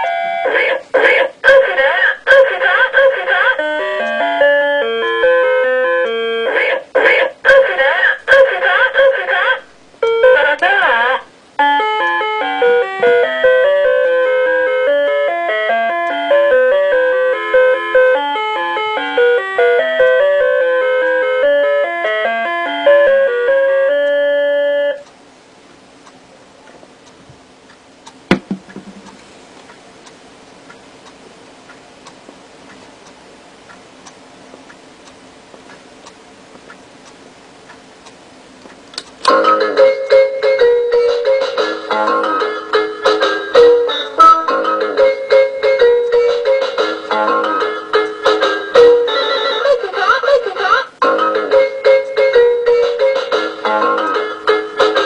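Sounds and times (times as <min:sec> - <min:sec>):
alarm clock beeping tune: 0:00.0 - 0:00.5, 0:03.6 - 0:06.5, 0:11.6 - 0:25.0
quiet hiss: 0:23.9 - 0:47.0.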